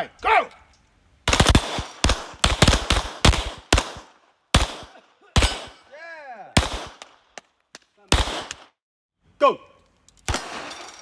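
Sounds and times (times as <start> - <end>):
person calling out: 0.0 - 0.7
pistol shots: 1.3 - 5.8, 6.6 - 7.4, 8.1 - 8.8, 10.3 - 10.8.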